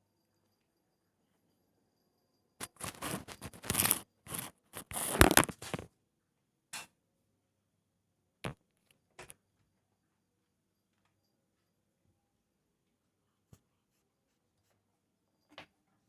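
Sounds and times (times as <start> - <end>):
cat scratching and scraping: 2.6 - 5.9.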